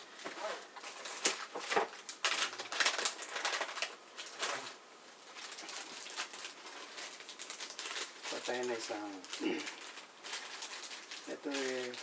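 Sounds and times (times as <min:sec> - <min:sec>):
clicks and rustles of handled parts: 0:05.4 - 0:12.0.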